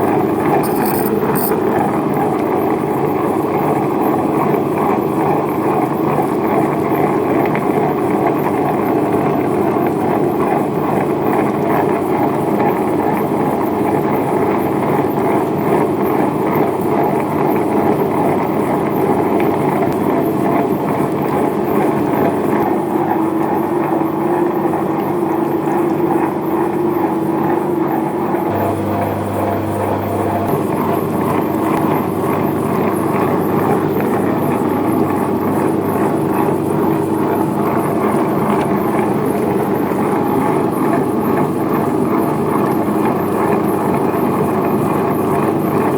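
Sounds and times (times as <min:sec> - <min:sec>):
motor hum: 0:28.5 - 0:35.2.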